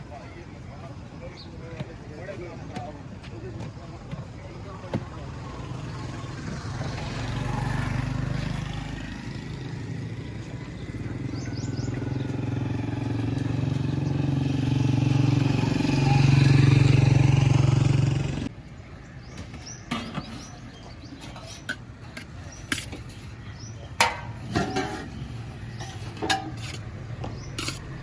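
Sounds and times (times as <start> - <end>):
small engine droning: 5.8 - 18.5.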